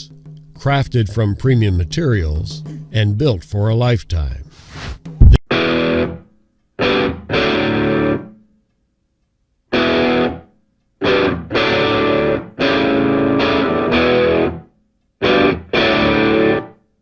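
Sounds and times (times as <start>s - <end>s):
distorted electric guitar chords: 5.2s - 8.4s, 9.7s - 16.8s.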